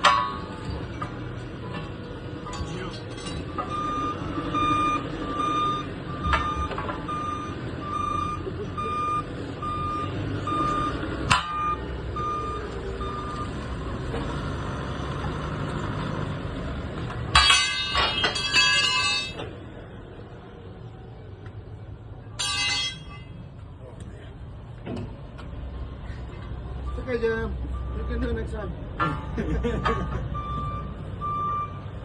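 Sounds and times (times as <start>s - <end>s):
ringing metal-on-metal clanks: 0.0s - 3.7s, 11.3s - 11.8s, 17.3s - 19.5s, 22.3s - 23.4s
back-up alarm beeping: 3.6s - 13.6s, 29.8s - 32.0s.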